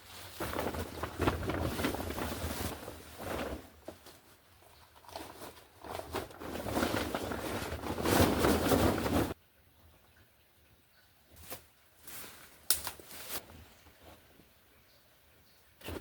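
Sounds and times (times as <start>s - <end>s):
dry leaves rustling and crackling: 0.0s - 4.4s, 5.1s - 9.4s.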